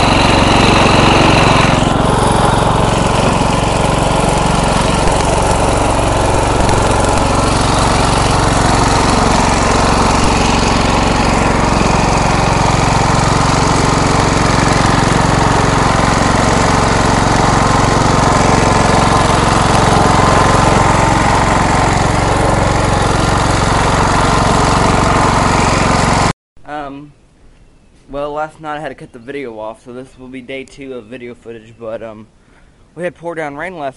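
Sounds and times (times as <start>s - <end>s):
riding mower engine running: 0.0s - 26.3s.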